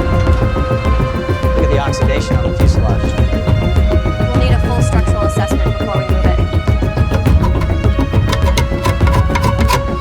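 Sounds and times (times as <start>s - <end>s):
fast percussive beat: 7.0s - 10.0s.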